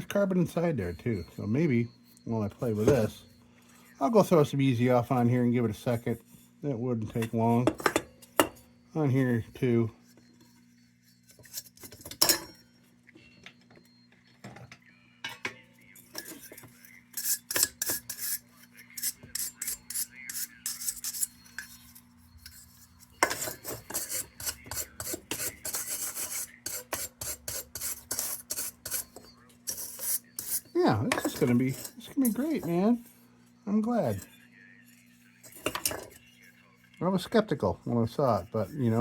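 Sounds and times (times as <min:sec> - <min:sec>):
rapid scraping strokes on metal: 0:16.1 - 0:33.2.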